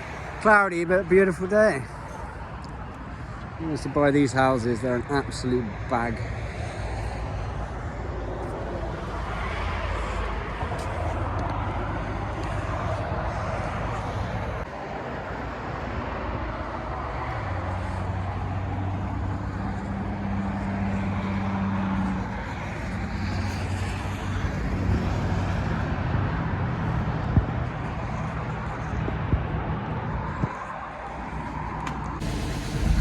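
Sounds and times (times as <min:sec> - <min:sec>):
engine running steadily: 0:31.4 - 0:33.0.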